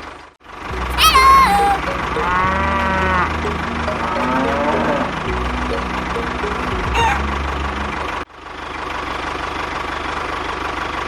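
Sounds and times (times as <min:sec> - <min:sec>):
engine idling: 0:03.3 - 0:11.0.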